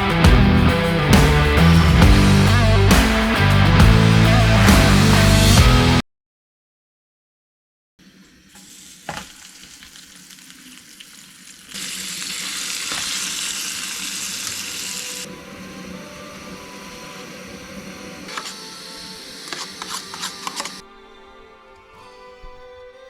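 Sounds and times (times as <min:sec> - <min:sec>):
food sizzling in a pan: 0:08.2 - 0:15.3.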